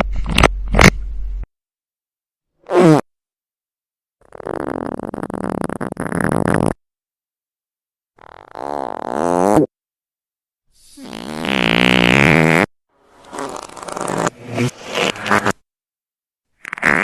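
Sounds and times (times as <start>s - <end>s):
fart sound effects: 2.6s - 3.1s, 4.3s - 6.8s, 8.2s - 9.7s, 10.9s - 15.6s, 16.6s - 17.0s.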